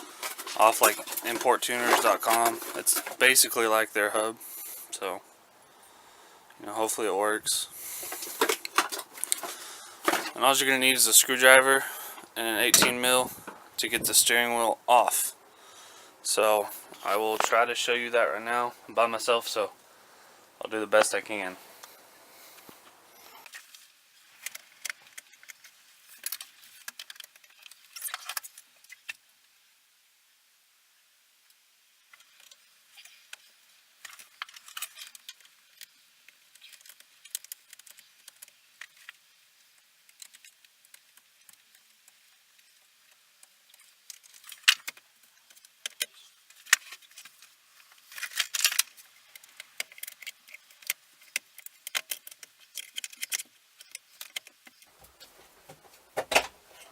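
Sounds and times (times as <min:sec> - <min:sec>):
hand tools and metal parts rattling: 0:00.0 - 0:03.8, 0:07.9 - 0:11.8.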